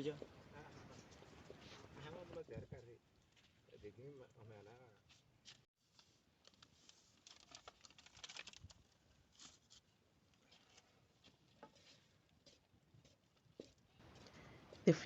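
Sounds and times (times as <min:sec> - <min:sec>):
stick scraping a cooking pot: 0:11.4 - 0:13.8.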